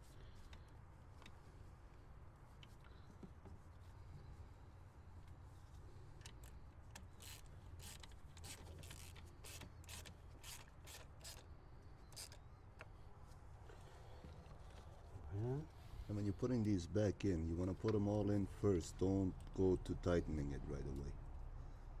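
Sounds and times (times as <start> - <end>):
small screws clicking into plastic: 6.2 - 11.4.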